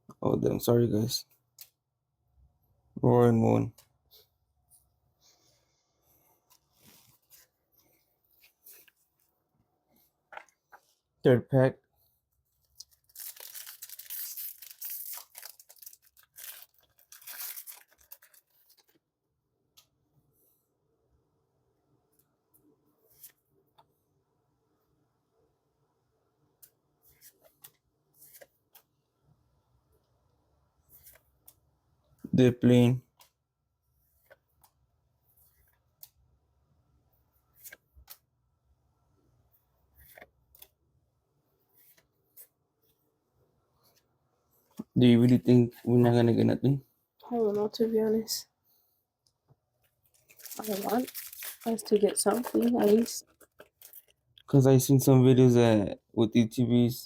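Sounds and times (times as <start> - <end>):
foil wrapper tearing: 12.8 - 18.8, 50.2 - 54.1.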